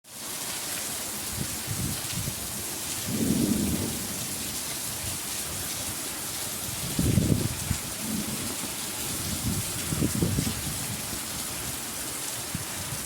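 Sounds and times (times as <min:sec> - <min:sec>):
heavy rain falling: 0:00.1 - 0:13.0
thunder rumbling: 0:03.0 - 0:05.8, 0:06.6 - 0:11.3.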